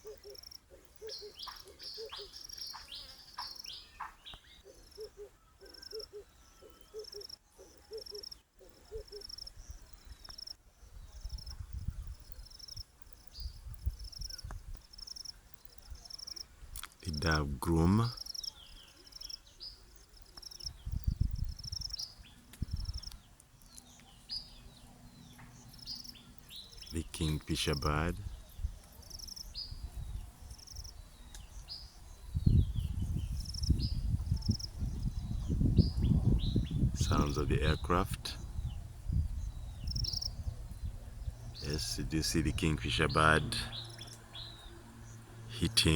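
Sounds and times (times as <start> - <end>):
dove cooing: 0.0 - 3.1, 4.6 - 9.4
crickets chirping: 0.0 - 17.3, 17.9 - 27.0, 27.8 - 37.5, 38.3 - 42.0.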